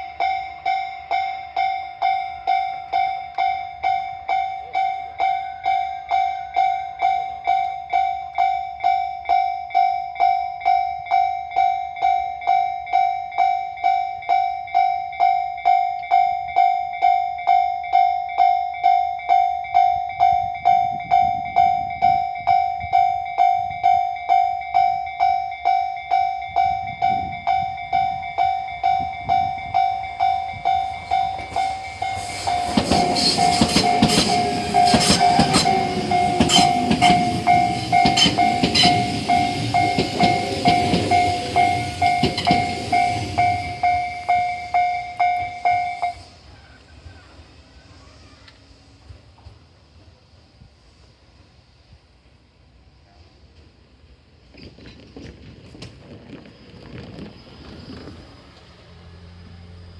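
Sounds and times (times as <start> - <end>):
level crossing warning bell: 0.0 - 47.0.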